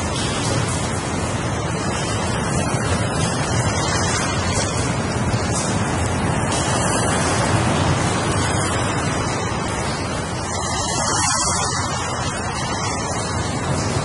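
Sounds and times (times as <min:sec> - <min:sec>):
ocean surf breaking: 0:06.8 - 0:14.0.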